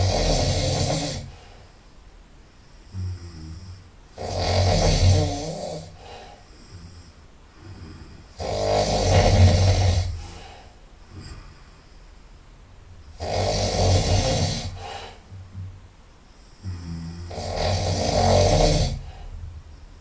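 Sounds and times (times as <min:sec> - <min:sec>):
person snoring loudly: 0:00.0 - 0:01.4, 0:02.9 - 0:11.5, 0:13.1 - 0:15.7, 0:16.6 - 0:19.3
quiet breaths: 0:00.0 - 0:20.0.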